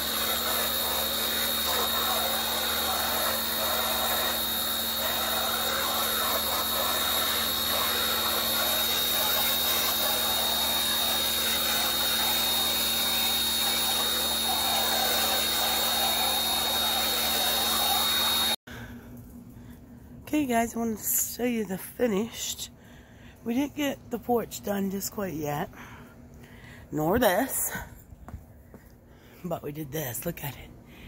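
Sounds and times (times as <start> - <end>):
pressure washer running: 0.0 - 18.6
water spray hissing: 0.0 - 18.6.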